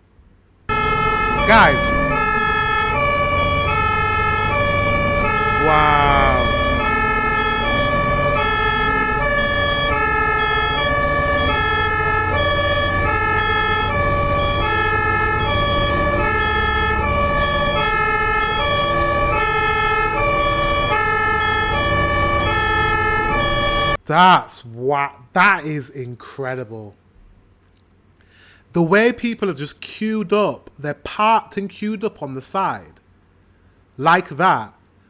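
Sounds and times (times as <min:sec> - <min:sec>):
ambulance two-tone siren: 0:00.7 - 0:24.0.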